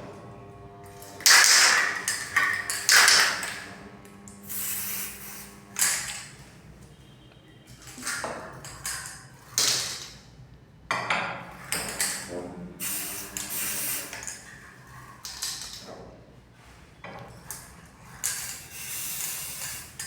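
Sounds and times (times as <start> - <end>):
aerosol can spraying hisses: 4.4 - 5.9.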